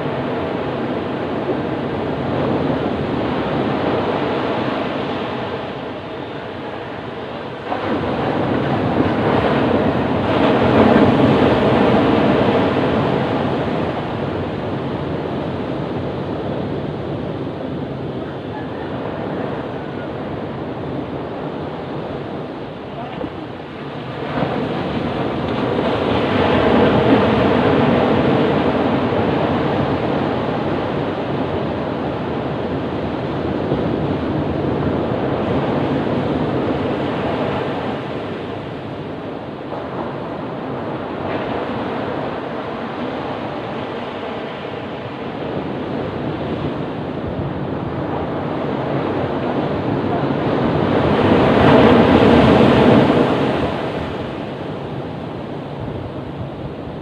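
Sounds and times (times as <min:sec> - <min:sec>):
ocean surf breaking: 0:00.0 - 0:57.0.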